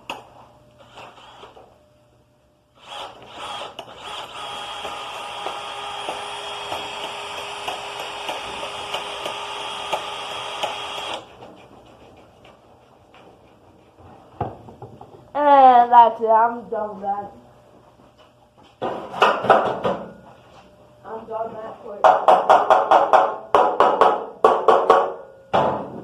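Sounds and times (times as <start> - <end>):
power tool grinding sheet metal: 2.8 - 11.3.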